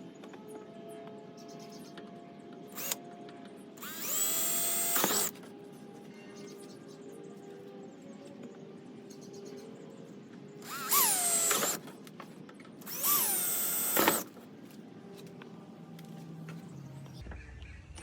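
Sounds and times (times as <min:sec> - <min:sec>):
power drill whining: 0:02.7 - 0:03.0, 0:03.8 - 0:05.3, 0:10.6 - 0:11.8, 0:12.8 - 0:14.4.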